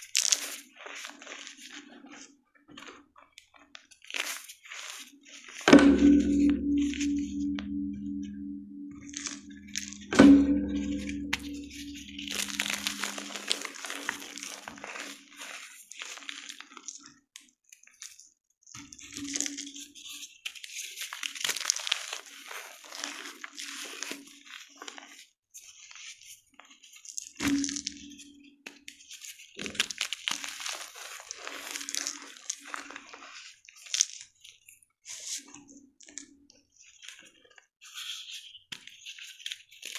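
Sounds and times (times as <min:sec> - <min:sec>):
chalk crunching and crackling: 0:00.0 - 0:02.9, 0:10.8 - 0:16.6, 0:29.7 - 0:34.4
heavy knock: 0:05.7 - 0:13.5.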